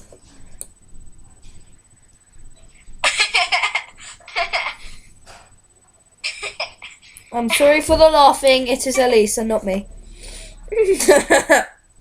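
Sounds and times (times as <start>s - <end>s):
girl giggling: 3.0s - 5.0s, 6.2s - 7.9s, 10.7s - 11.8s.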